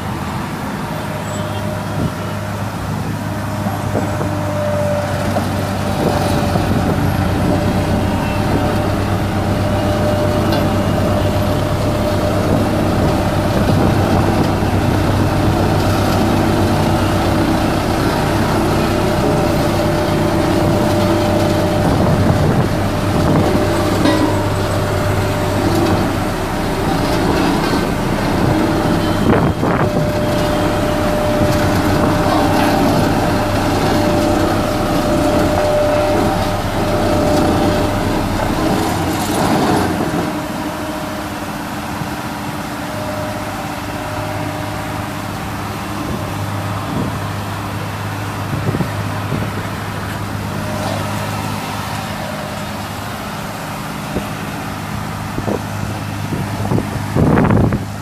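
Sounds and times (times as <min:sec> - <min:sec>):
road roller diesel engine running: 0:00.0 - 0:58.0.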